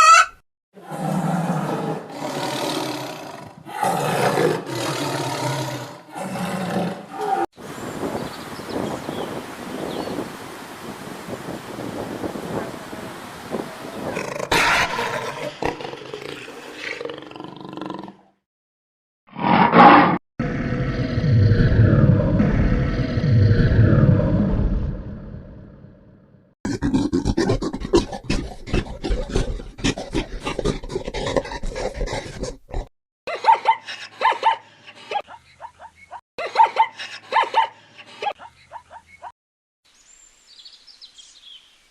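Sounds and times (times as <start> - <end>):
growling animal call: 0.8 - 7.5, 19.3 - 24.6, 26.7 - 32.9.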